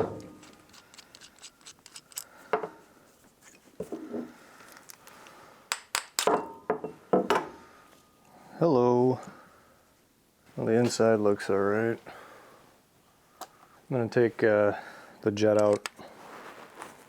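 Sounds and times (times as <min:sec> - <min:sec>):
metal parts and tools clinking: 0:00.0 - 0:02.5, 0:04.6 - 0:06.4.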